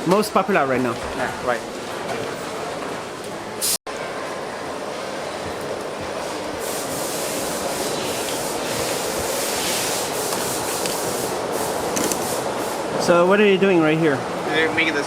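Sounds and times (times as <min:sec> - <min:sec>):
machines and ventilation rushing: 0:00.0 - 0:15.0.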